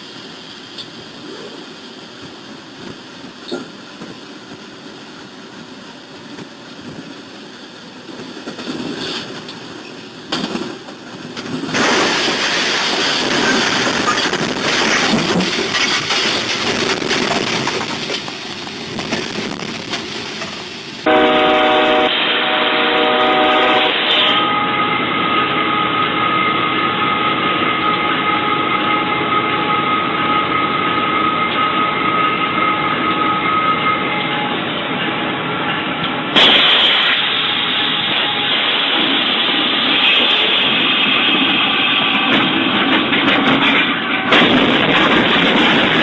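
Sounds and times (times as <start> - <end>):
locomotive horn blowing: 21.0 - 35.6
loud rushing rumble: 36.2 - 46.0.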